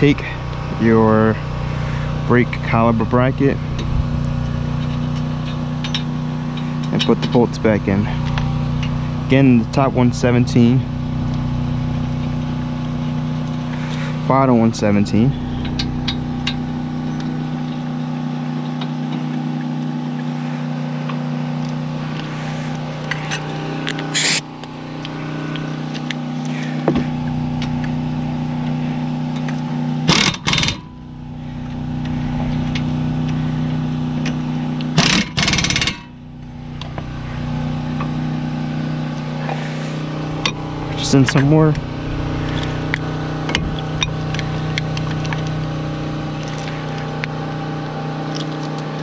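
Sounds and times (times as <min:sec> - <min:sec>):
low mechanical hum: 0:00.0 - 0:49.0
short loud noise bursts: 0:24.1 - 0:24.5.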